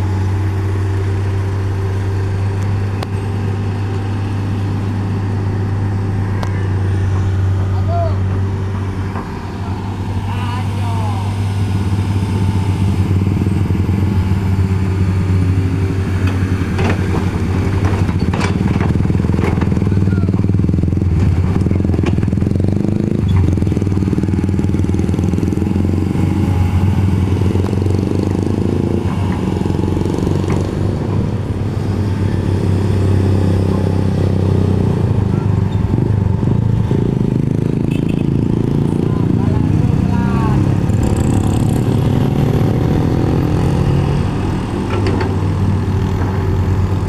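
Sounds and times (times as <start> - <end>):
heavy machinery engine running: 0.0 - 47.0
sharp knocks and clanks: 16.2 - 19.9, 44.8 - 46.5.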